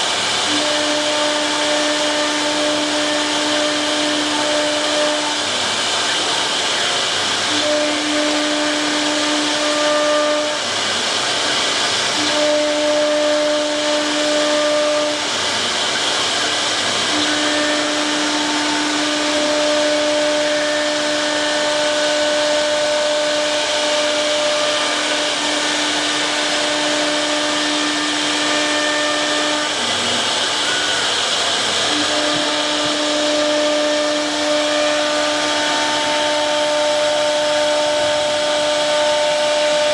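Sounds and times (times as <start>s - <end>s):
wood router cutting wood: 16.8s - 39.9s.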